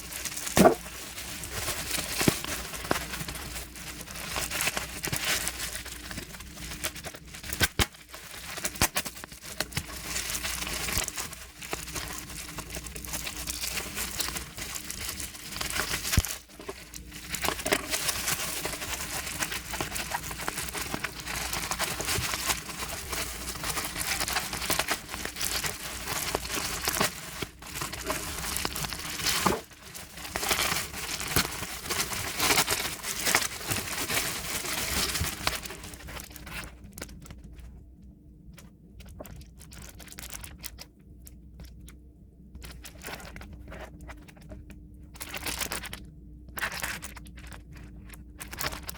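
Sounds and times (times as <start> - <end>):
packaging tearing: 0.0 - 36.7
packaging crinkling and rustling: 0.0 - 37.8, 38.6 - 42.0, 42.6 - 48.9.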